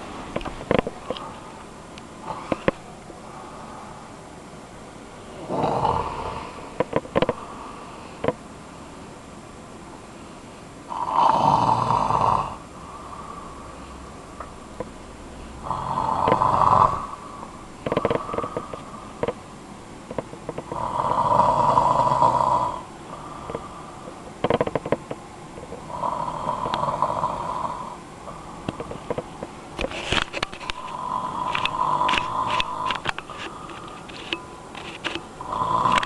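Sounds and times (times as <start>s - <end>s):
man snoring loudly: 2.2s - 2.8s, 5.4s - 7.4s, 10.9s - 13.4s, 15.6s - 18.8s, 20.6s - 23.9s, 25.9s - 28.8s, 30.7s - 33.7s, 35.4s - 36.0s
short crackling sounds: 28.7s - 36.0s.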